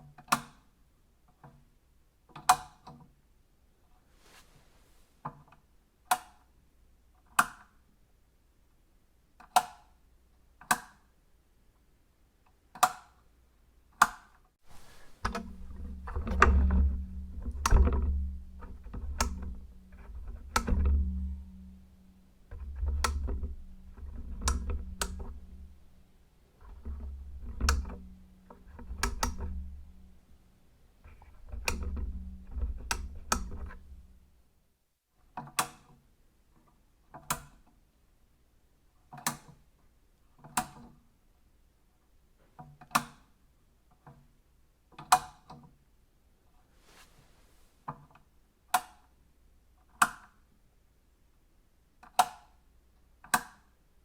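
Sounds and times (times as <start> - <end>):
switch clicks: 6.1 - 6.4
low electrical hum: 14.6 - 34.9.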